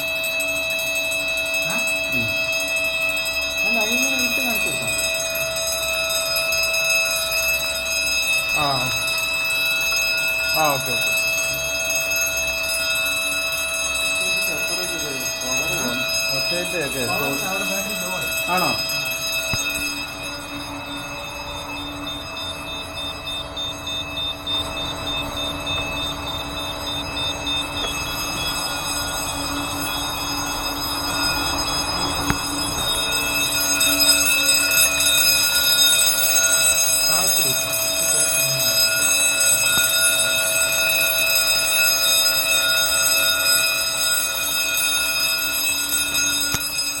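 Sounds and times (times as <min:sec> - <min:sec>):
alarm panel pulsing beep: 0:00.0 - 0:47.0
lower alarm tone: 0:00.0 - 0:47.0
machinery rumble: 0:10.2 - 0:42.0.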